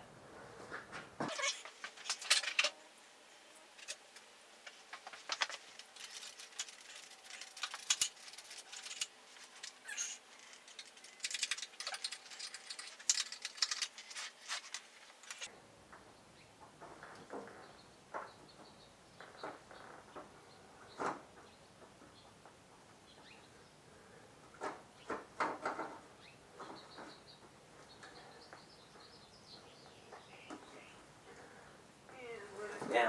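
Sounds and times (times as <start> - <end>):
clicks and scrapes on a chain: 4.7 - 15.5.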